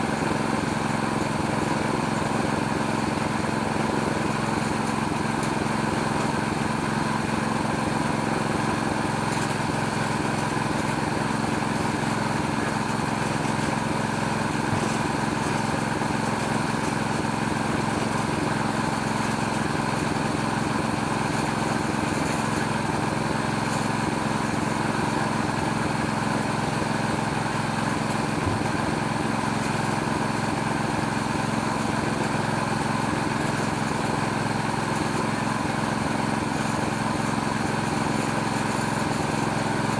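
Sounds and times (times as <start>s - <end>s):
petrol engine running steadily: 0.0s - 39.9s.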